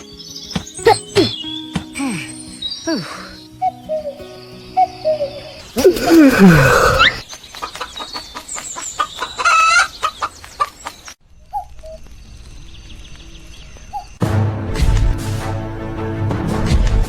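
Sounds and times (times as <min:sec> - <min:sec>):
chickens clucking: 0:07.0 - 0:11.7.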